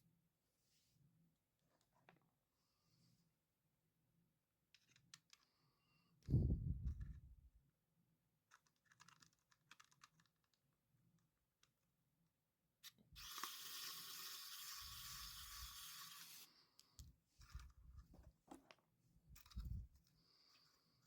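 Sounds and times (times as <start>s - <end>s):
electric screwdriver motor: 13.2s - 16.5s.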